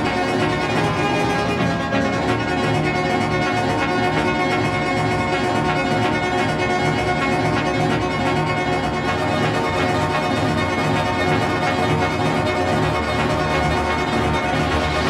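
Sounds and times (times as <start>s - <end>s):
electronic music: 0.0s - 4.6s.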